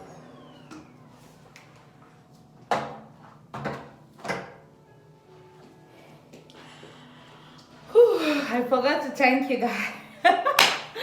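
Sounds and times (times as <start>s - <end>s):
objects knocking and clunking: 2.6s - 4.6s.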